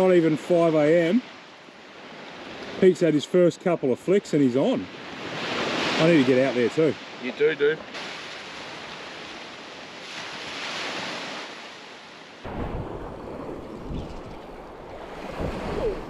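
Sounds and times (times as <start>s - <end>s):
surf washing on beach: 0.0s - 16.0s
wind rumbling on microphone: 12.4s - 16.0s.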